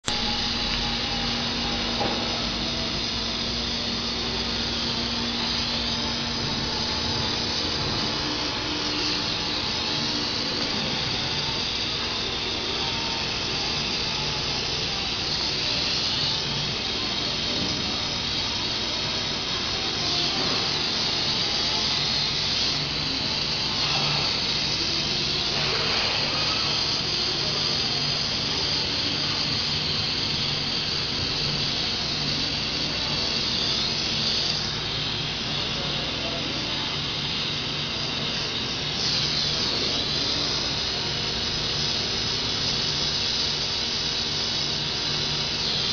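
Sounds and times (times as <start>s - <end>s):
machine humming and hissing: 0.0s - 45.9s.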